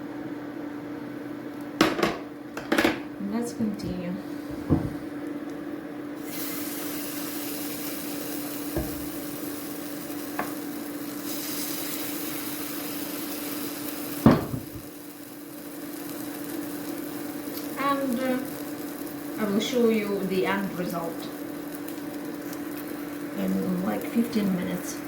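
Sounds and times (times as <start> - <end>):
steady low hum: 0.0 - 11.4
knock against a pan: 1.8 - 3.0, 4.6 - 5.0, 8.8 - 9.1, 14.3 - 14.8
batter sizzling in oil: 6.2 - 25.0.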